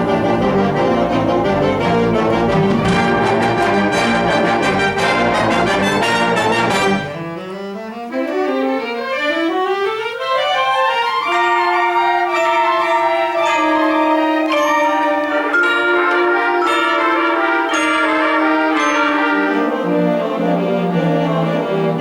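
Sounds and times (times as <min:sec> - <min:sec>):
concert band playing: 0:00.0 - 0:07.3, 0:11.2 - 0:20.5
held brass chords: 0:00.0 - 0:07.6, 0:10.9 - 0:22.0
percussion hits: 0:01.2 - 0:07.0, 0:13.6 - 0:19.6.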